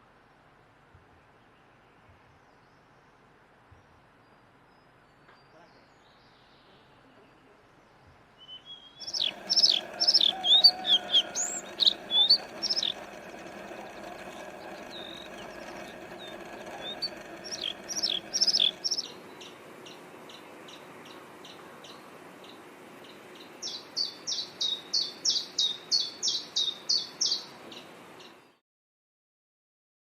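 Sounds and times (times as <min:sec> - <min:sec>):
songbird singing: 0:05.2 - 0:28.6
bird chips: 0:09.0 - 0:22.0
steady low hum: 0:09.0 - 0:25.4.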